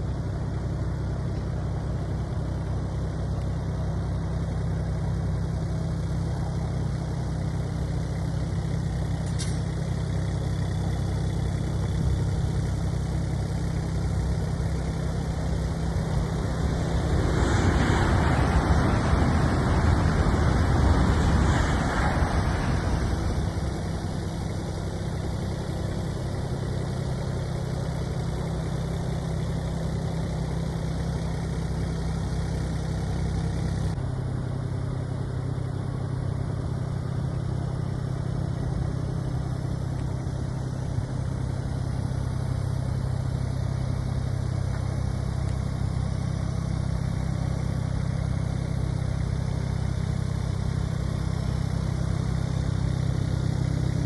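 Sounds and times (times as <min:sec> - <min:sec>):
diesel engine idling: 0:00.0 - 0:54.0
loud rushing noise: 0:15.9 - 0:24.5.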